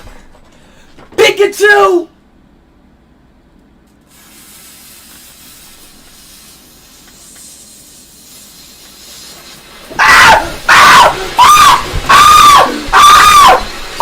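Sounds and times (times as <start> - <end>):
firework hissing: 4.0 - 14.0.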